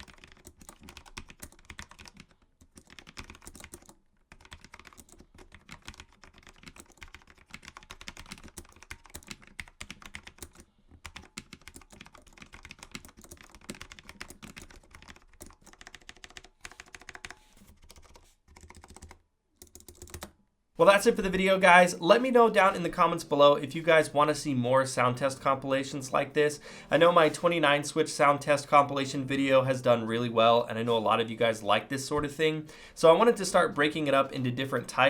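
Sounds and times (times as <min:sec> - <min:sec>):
mechanical keyboard typing: 0:00.0 - 0:20.4.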